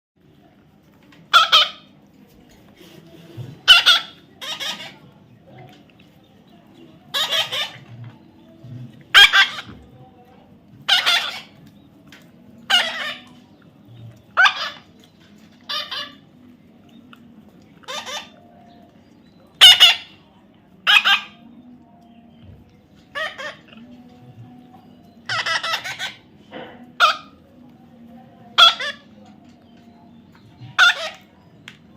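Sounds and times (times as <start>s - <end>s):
parrot squawking: 1.3s - 1.9s, 3.6s - 5.0s, 7.1s - 8.0s, 9.1s - 9.8s, 10.8s - 11.6s, 12.6s - 13.4s, 14.3s - 15.0s, 15.6s - 16.4s, 17.8s - 18.6s, 19.6s - 20.2s, 20.8s - 21.5s, 23.1s - 23.9s, 25.2s - 27.4s, 28.5s - 29.4s, 30.6s - 31.3s.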